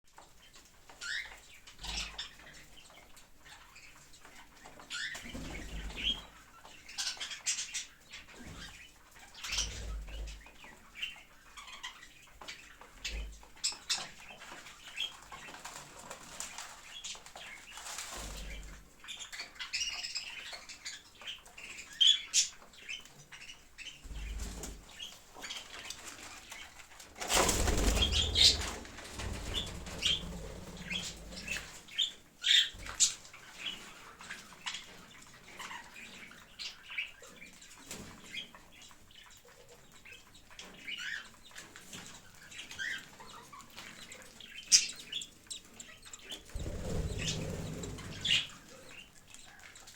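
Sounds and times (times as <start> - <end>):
wings flapping: 25.8 - 31.8, 46.5 - 48.6
parrots chirping: 42.5 - 49.8.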